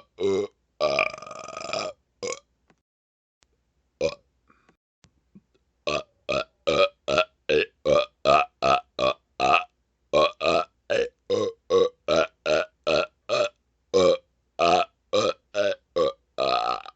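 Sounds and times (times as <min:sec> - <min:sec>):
man burping: 0:00.0 - 0:02.4, 0:05.9 - 0:16.9.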